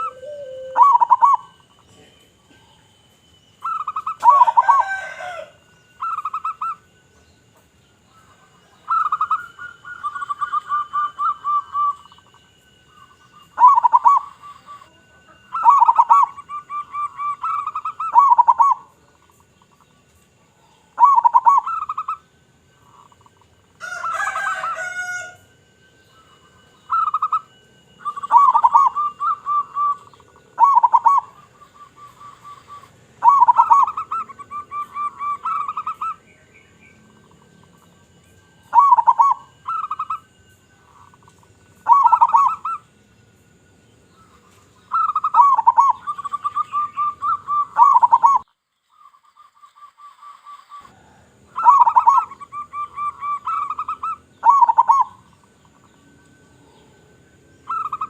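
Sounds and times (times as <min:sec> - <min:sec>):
harsh bird call: 0:00.0 - 0:01.8, 0:49.8 - 0:55.8
dove cooing with trill: 0:00.0 - 0:02.8, 0:03.6 - 0:07.0, 0:08.2 - 0:12.3, 0:13.0 - 0:19.3, 0:20.7 - 0:25.4, 0:26.3 - 0:36.4, 0:38.7 - 0:42.9, 0:44.3 - 0:48.5, 0:50.4 - 0:56.0, 0:57.6 - 0:58.0.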